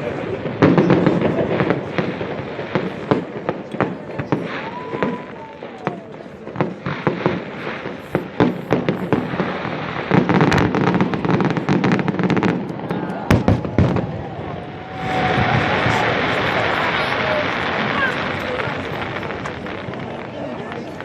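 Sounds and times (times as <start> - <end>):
fireworks bangs and crackling: 0.0 - 21.0
firework whistle: 4.3 - 6.1, 7.0 - 21.0.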